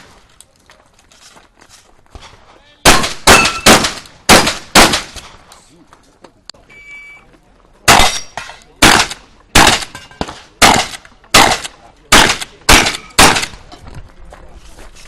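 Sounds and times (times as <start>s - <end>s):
shotgun shots: 2.8s - 5.4s, 7.9s - 13.6s.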